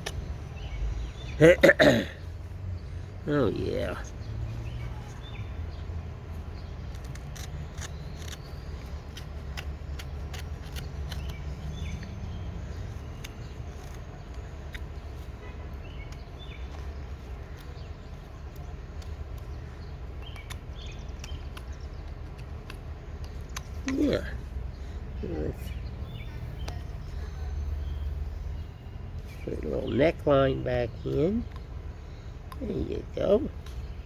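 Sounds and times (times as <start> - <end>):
birds chirping: 0.0 - 34.0
knife whittling wood: 6.8 - 15.2.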